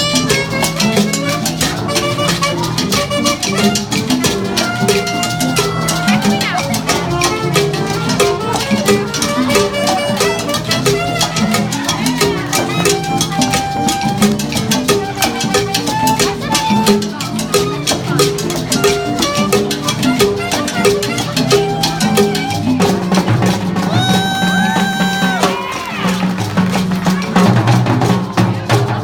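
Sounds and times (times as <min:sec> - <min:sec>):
jazz band latin rhythm: 0:00.0 - 0:29.0
rattle and drum percussion: 0:00.0 - 0:29.0.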